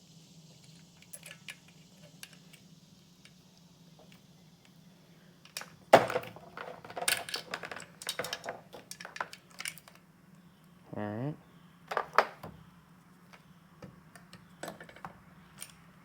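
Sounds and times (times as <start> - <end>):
rattling clicks and clinks: 6.5 - 10.0.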